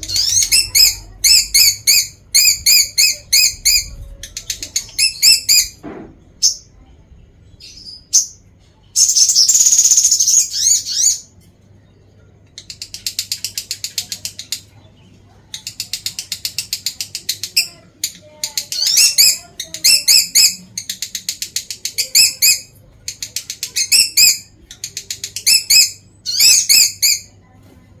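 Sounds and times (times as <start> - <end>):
lovebird chattering: 0.0 - 5.8, 9.0 - 11.3, 12.6 - 14.7, 15.5 - 27.3.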